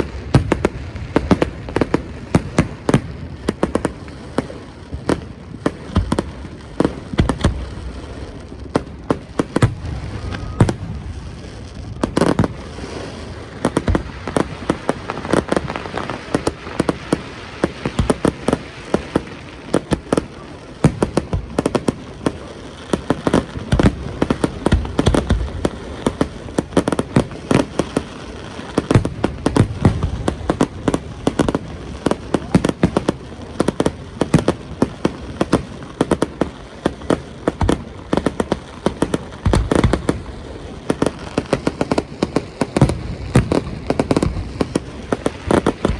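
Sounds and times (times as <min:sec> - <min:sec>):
fireworks bangs and crackles: 0:00.0 - 0:45.9.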